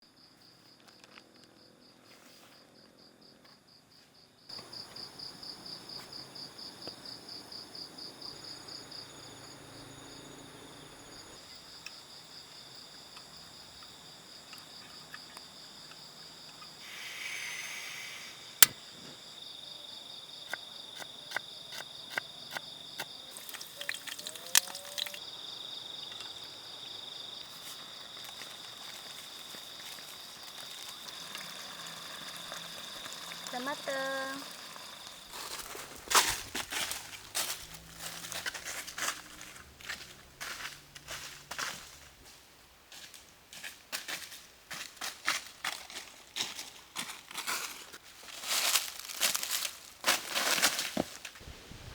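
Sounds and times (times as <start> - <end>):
night insects chirring: 2.8 - 43.2.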